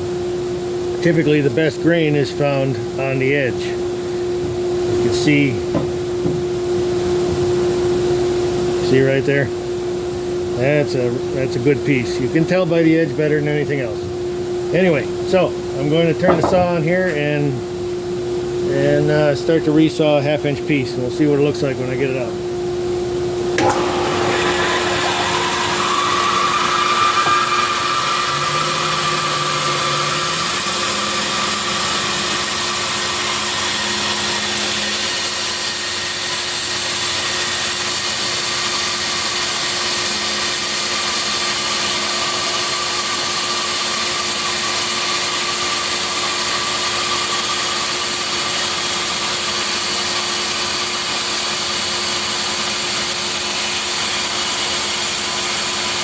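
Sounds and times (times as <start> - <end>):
bandsaw cutting wood: 23.6 - 56.0.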